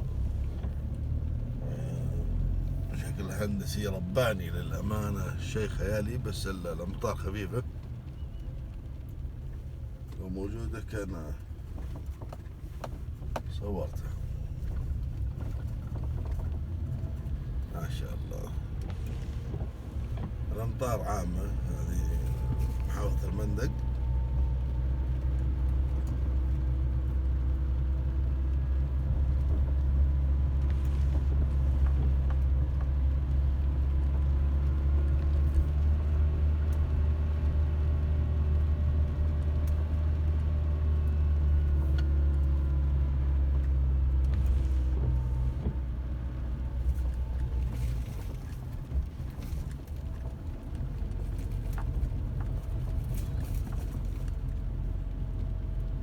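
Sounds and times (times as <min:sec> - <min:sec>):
car engine and road rumble: 0:00.0 - 0:56.0.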